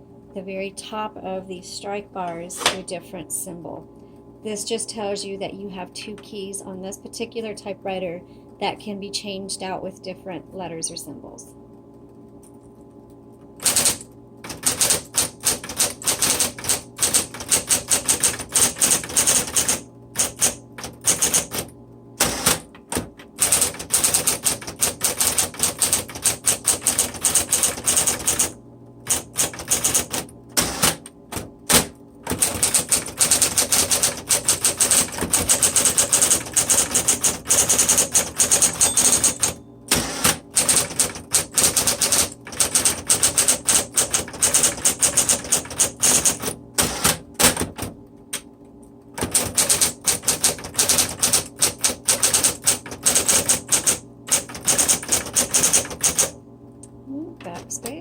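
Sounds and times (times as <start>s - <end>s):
typewriter keystrokes: 13.6s - 28.5s, 29.1s - 31.0s, 31.7s - 47.9s, 49.2s - 56.3s
typewriter motor hum: 13.6s - 56.4s.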